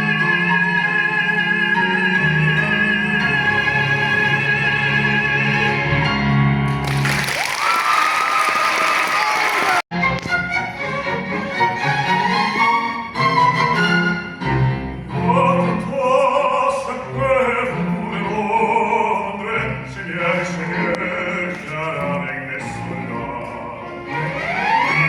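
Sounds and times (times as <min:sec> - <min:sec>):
bowed strings: 0:10.0 - 0:25.0
operatic voice singing: 0:15.1 - 0:25.0.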